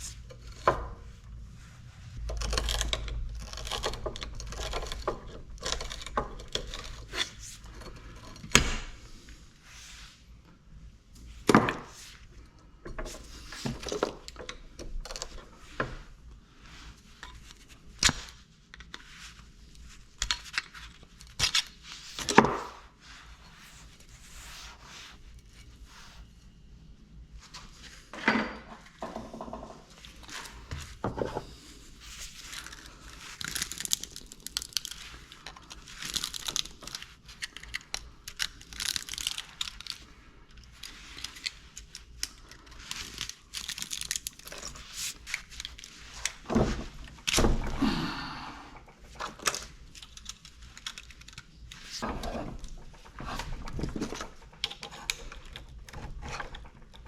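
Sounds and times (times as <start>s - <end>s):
copper wire rustling and crinkling: 0.0s - 10.4s, 29.6s - 47.8s, 48.7s - 57.0s.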